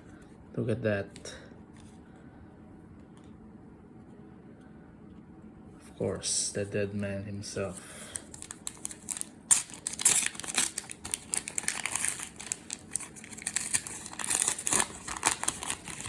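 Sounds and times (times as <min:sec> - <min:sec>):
plastic wrapping crinkling: 0:08.1 - 0:16.0.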